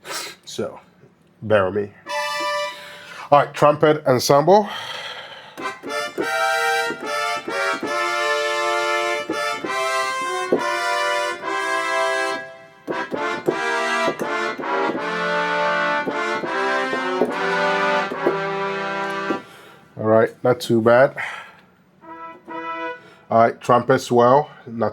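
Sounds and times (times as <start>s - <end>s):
synthesizer trumpet chords: 2.1s - 3.0s, 5.6s - 19.9s, 22.0s - 23.9s.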